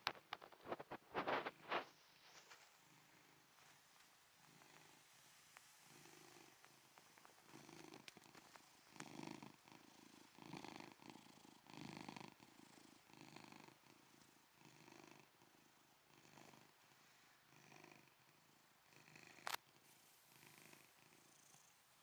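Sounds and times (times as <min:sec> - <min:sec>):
cat snoring and purring: 0:05.8 - 0:19.6, 0:20.4 - 0:21.9.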